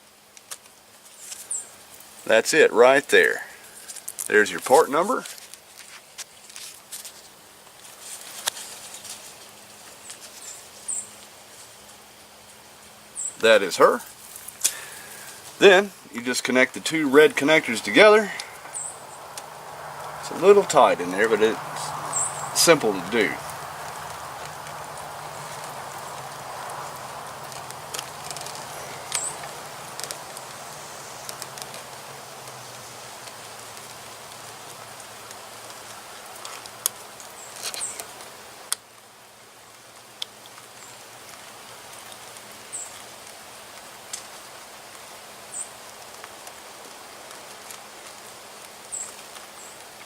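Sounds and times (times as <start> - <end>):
outdoor background hiss: 0.0 - 50.0
faint rustling: 13.2 - 31.8.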